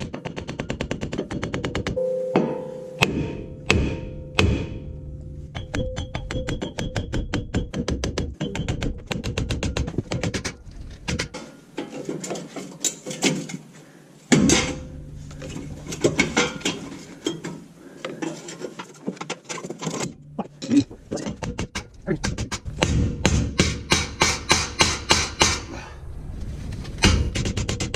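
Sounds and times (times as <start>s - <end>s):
heavy hammer blows: 2.0s - 5.2s, 22.4s - 27.9s.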